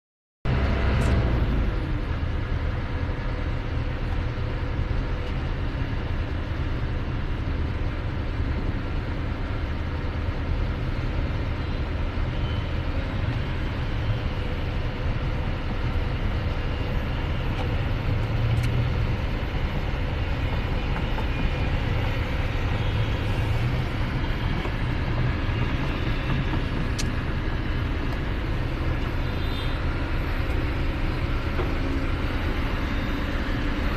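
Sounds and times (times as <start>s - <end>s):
heavy machinery engine rumbling: 0.5s - 33.9s.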